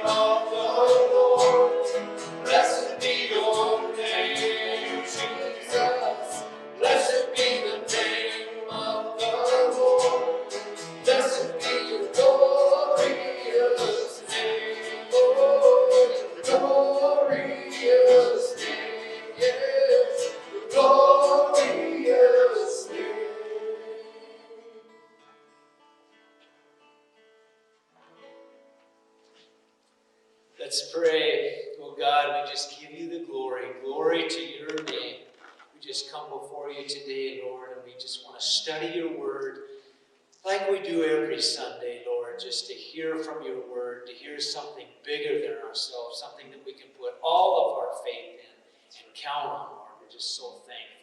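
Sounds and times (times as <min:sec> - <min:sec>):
voices singing: 0:00.0 - 0:24.8
strummed acoustic guitar: 0:00.0 - 0:27.4.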